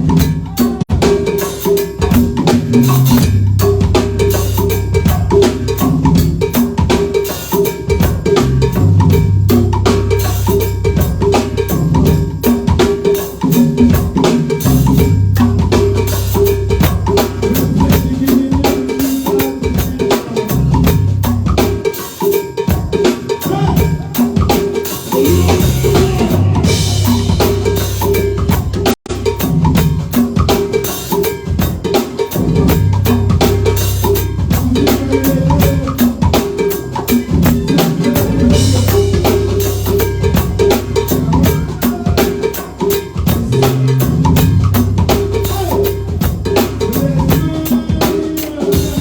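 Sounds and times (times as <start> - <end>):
drum kit beat: 0.0 - 49.0
live band music: 0.0 - 49.0
bass line: 2.0 - 19.8, 20.5 - 21.8, 25.2 - 30.8, 32.4 - 49.0.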